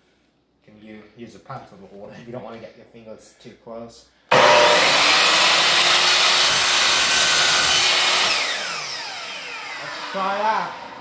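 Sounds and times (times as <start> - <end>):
miter saw cutting trim: 4.3 - 11.0
saw blade winding down whine: 4.3 - 11.0.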